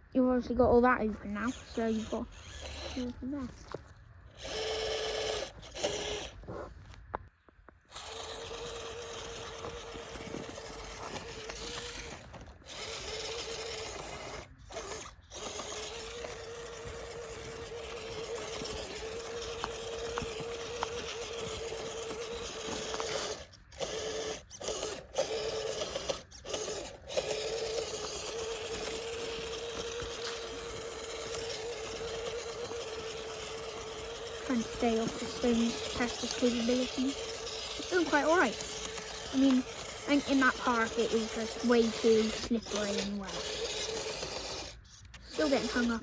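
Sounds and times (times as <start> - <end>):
electric motor whining: 0.1 - 7.1, 7.7 - 46.0.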